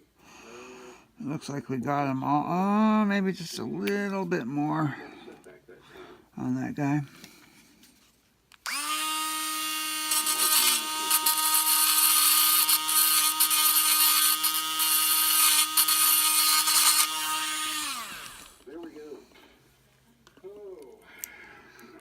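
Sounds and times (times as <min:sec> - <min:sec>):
rotary tool whine: 0:08.6 - 0:18.6.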